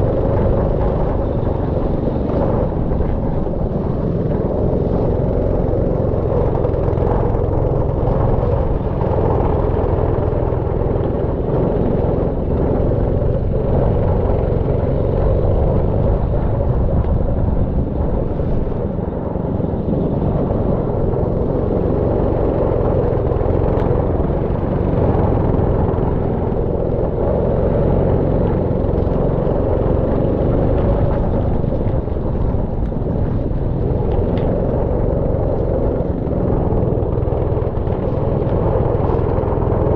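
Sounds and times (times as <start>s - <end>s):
go-kart engine rumble: 0.0s - 39.9s.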